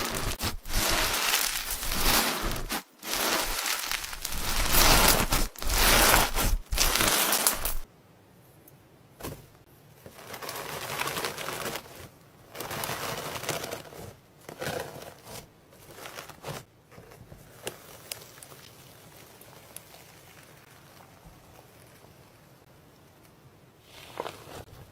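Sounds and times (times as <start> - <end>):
slime squishing and crackling: 0.0 - 7.9, 17.5 - 22.0.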